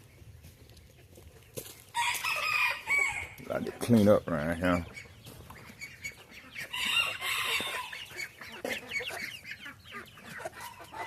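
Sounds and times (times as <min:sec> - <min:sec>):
chickens clucking: 0:00.0 - 0:11.0
loud harsh chicken call: 0:02.0 - 0:03.4, 0:06.6 - 0:09.4.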